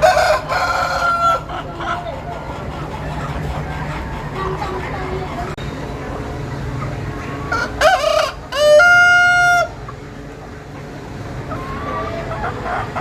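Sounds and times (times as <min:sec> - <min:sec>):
rooster crowing: 0:00.0 - 0:01.5, 0:07.5 - 0:09.8.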